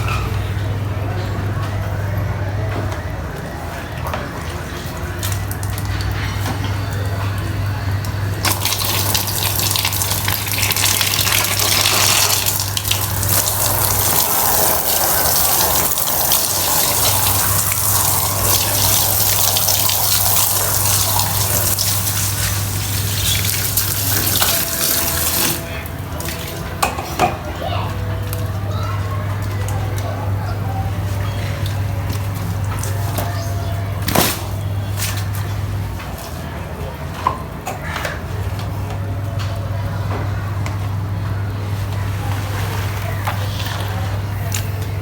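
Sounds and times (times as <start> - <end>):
water spraying hard: 12.1 - 25.6.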